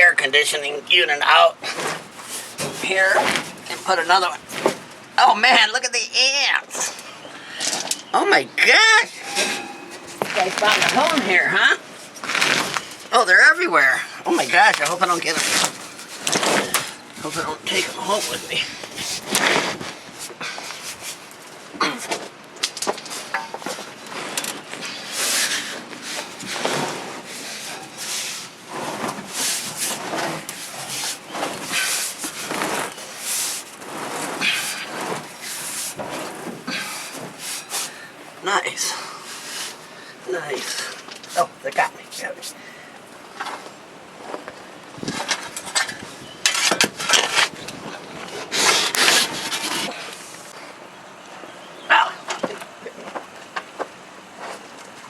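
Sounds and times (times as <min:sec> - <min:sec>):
rough scraping on gritty surface: 0:08.8 - 0:13.2, 0:14.3 - 0:20.1, 0:23.0 - 0:38.0, 0:46.5 - 0:50.6.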